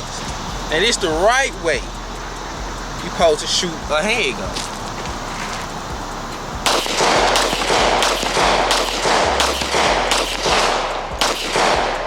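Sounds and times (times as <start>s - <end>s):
pistol shots: 6.6s - 12.0s.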